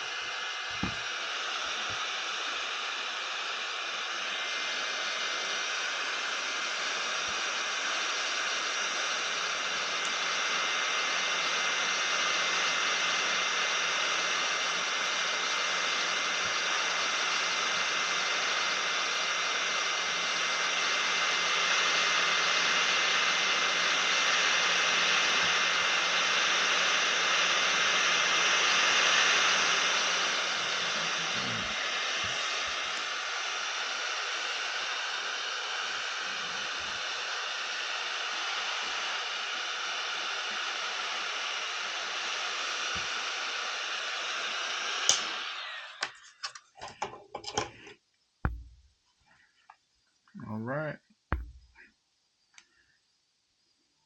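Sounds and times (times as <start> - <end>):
hot air station hissing: 0.0 - 48.7
faint high whine: 22.8 - 39.2, 50.4 - 54.0.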